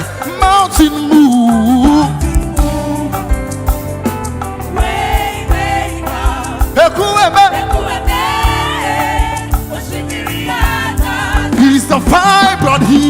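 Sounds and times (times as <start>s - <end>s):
gospel band playing: 0.0s - 13.0s
people singing: 4.4s - 13.0s.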